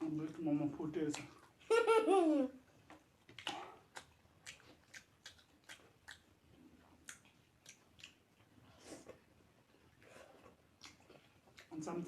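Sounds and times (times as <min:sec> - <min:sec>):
person chewing food: 0:02.8 - 0:11.8
mouth smacking: 0:03.3 - 0:06.3.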